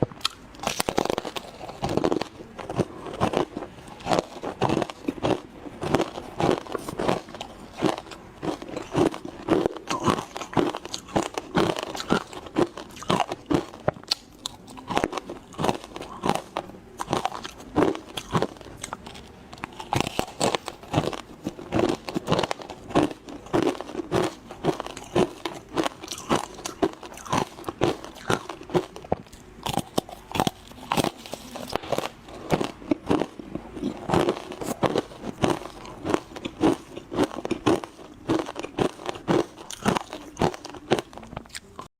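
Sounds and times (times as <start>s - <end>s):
ice being chewed with crunches: 0.2s - 41.9s.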